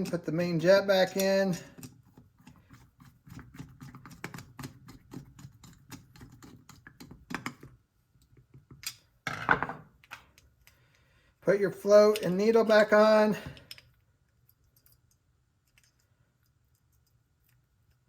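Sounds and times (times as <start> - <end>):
small metal parts clicking: 13.6 - 18.0.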